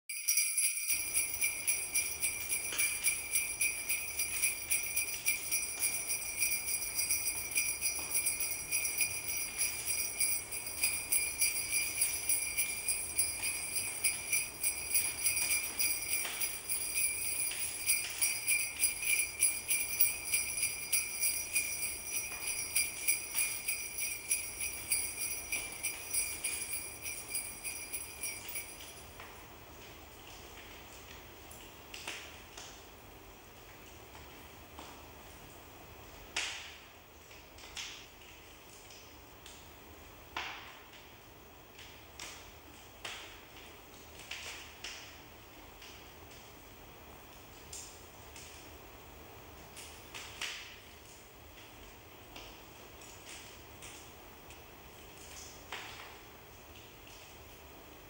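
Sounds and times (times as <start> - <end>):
jingle bells shaken: 0.1 - 29.4.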